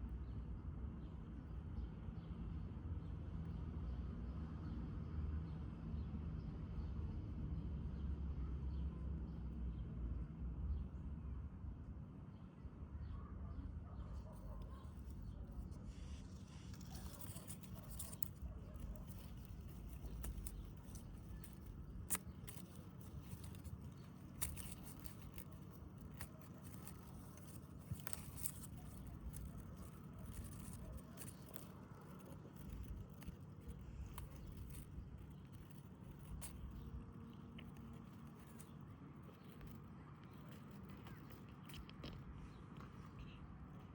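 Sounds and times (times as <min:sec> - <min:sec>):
low outdoor rumble: 0:00.0 - 0:43.9
long grass rustling and snapping: 0:14.6 - 0:43.1.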